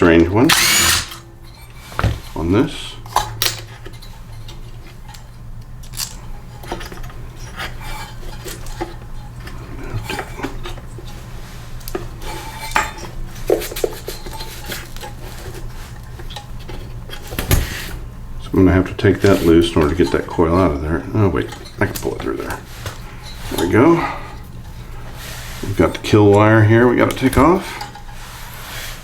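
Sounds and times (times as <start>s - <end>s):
steady low hum: 0.0s - 29.0s
metal tools clinking and scraping: 11.8s - 17.3s, 18.8s - 28.4s.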